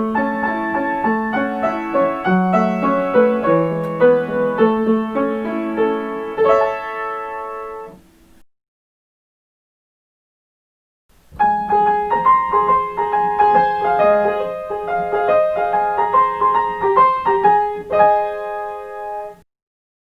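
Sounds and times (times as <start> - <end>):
piano chime melody: 0.0 - 8.0, 11.4 - 19.4.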